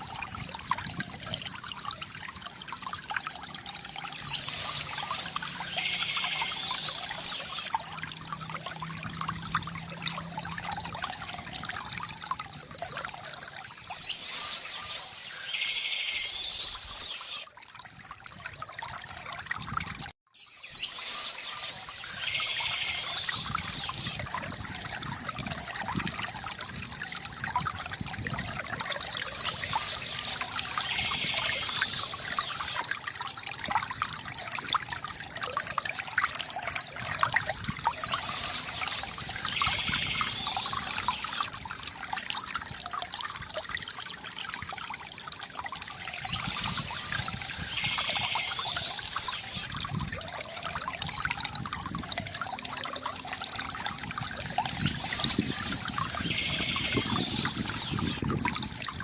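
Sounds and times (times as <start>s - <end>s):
stream trickling and babbling: 0.0s - 59.0s
songbird singing: 4.1s - 7.7s, 13.8s - 17.4s, 20.4s - 24.2s, 29.2s - 32.8s, 37.9s - 41.5s, 46.1s - 49.7s, 54.5s - 58.2s.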